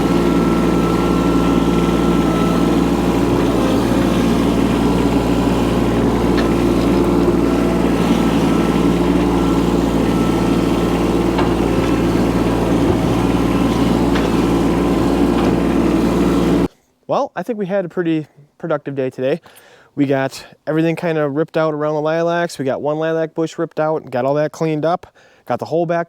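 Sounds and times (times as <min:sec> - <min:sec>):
small engine running: 0:00.0 - 0:16.7
faint knocks: 0:05.8 - 0:14.5.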